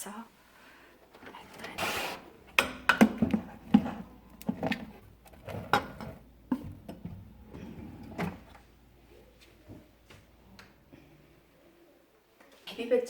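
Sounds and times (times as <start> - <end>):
objects knocking on hard surface: 2.5 - 8.6.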